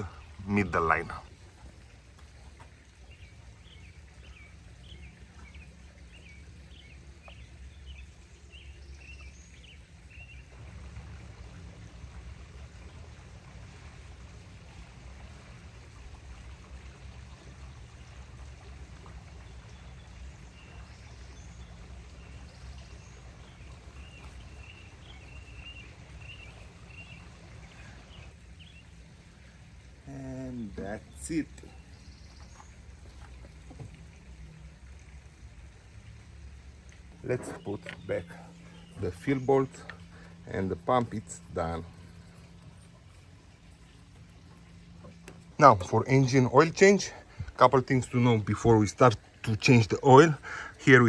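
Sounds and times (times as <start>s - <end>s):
low background noise: 0.0s - 51.0s
oil trickling through a funnel: 0.0s - 51.0s.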